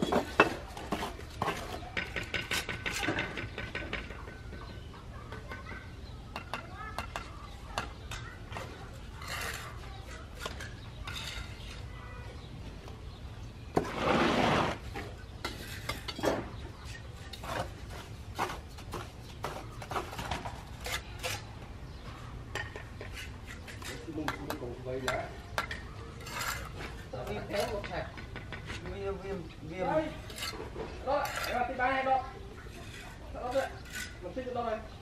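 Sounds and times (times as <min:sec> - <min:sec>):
loud scraping rush: 0:13.8 - 0:14.9
light clinks and scrapes: 0:22.6 - 0:27.9, 0:32.6 - 0:34.3.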